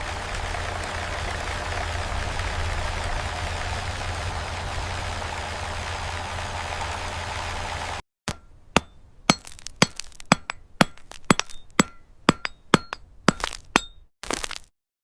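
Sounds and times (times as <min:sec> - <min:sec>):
hammer striking metal: 0:08.3 - 0:14.1.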